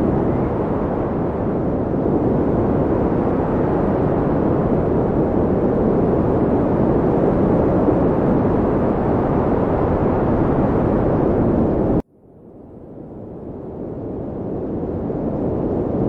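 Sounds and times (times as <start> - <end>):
steady wind rushing: 0.0 - 12.0.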